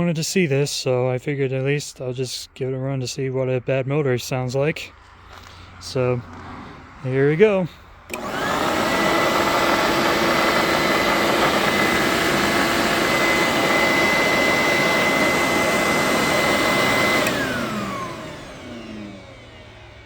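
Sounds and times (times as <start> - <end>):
carpet cleaner motor whine: 8.1 - 20.0.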